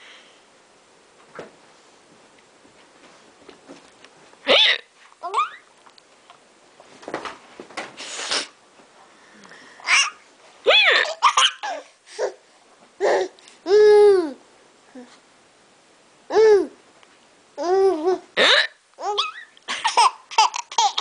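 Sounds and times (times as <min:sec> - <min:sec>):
baby laughing: 0:09.8 - 0:12.4, 0:17.6 - 0:21.0.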